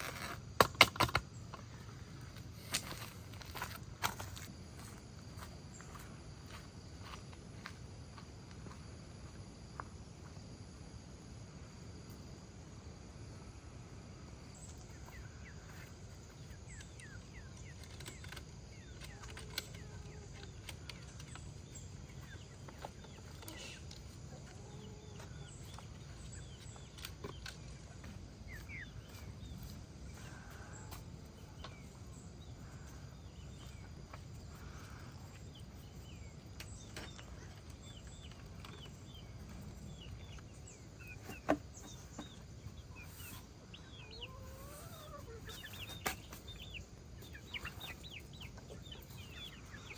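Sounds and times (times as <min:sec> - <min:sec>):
chickens calling softly: 0:14.6 - 0:49.9.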